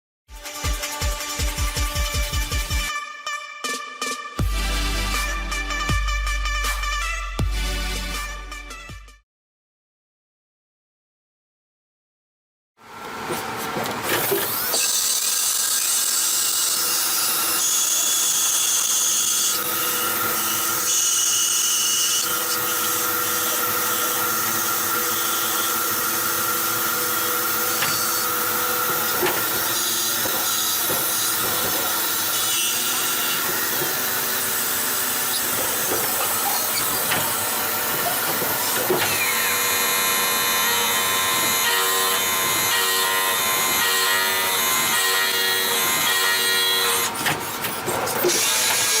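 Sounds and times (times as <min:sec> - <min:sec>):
lathe machine whine: 0:16.6 - 0:47.7.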